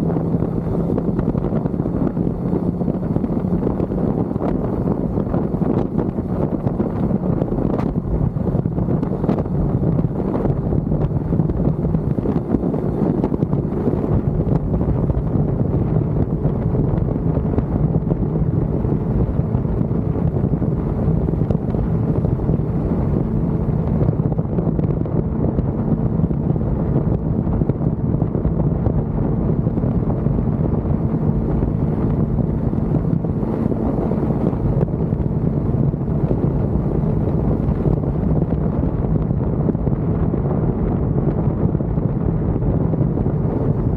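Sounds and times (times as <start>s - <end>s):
motorcycle engine cruising: 0.0s - 43.9s
wind rushing over microphone: 0.0s - 43.9s.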